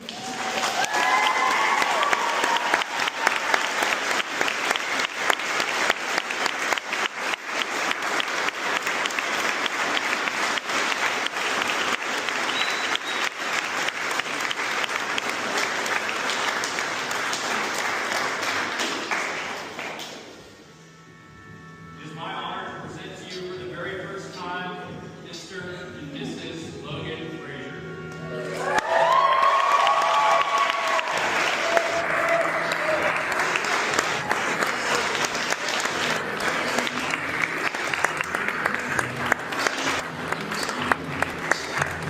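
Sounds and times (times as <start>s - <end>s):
people whooping: 0.0s - 4.2s, 28.4s - 35.9s
crowd clapping: 0.0s - 20.4s, 28.5s - 42.0s.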